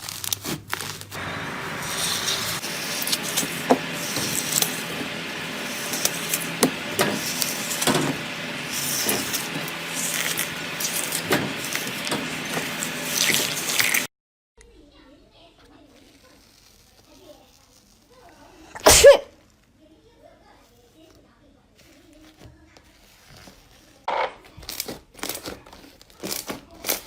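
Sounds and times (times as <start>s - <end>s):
wet squelching of slime: 1.8s - 14.1s.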